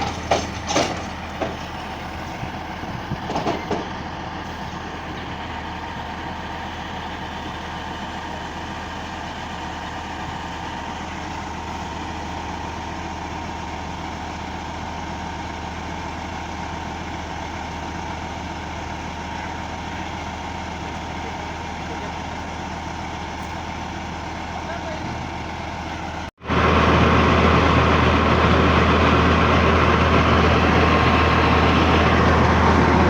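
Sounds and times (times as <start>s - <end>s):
heavy diesel engine droning: 0.0s - 33.0s
machinery whine: 25.0s - 33.0s.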